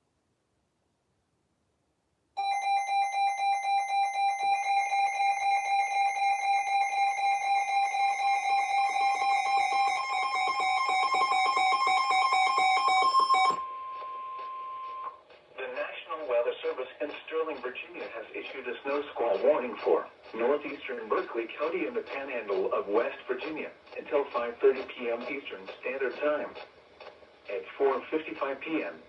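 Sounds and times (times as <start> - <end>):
pulsing electronic alarm tone: 2.4 - 15.1
steady high electronic tone: 2.4 - 15.1.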